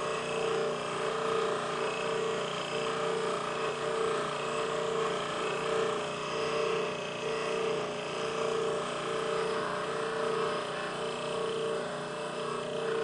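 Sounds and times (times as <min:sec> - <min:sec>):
buffing wheel whirring: 0:00.0 - 0:13.0.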